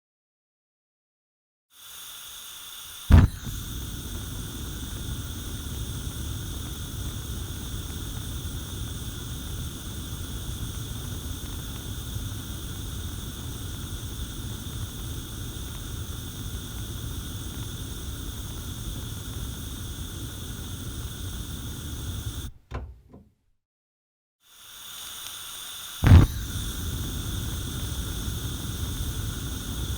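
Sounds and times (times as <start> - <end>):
gas hissing: 1.8 - 22.6, 24.6 - 29.9
flame sputtering: 1.9 - 22.5, 24.8 - 29.9
gas flame rushing: 1.9 - 22.6, 24.8 - 29.9
burner igniting pop: 3.1 - 22.6, 26.0 - 29.9.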